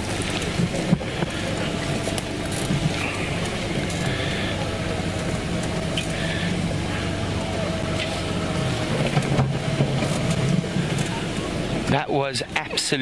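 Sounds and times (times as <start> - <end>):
vehicle engine running: 0.0 - 13.0.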